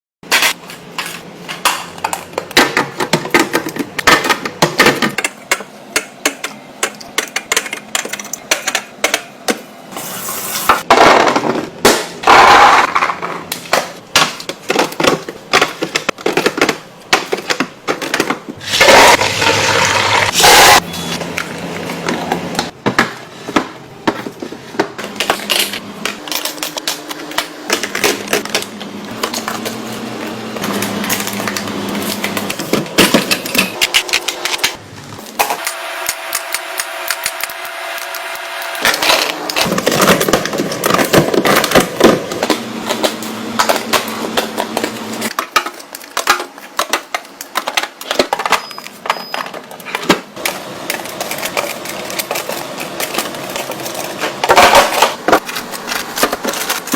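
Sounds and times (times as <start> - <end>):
objects clicking and clattering: 0.3 - 9.7, 10.7 - 19.0, 38.8 - 56.9.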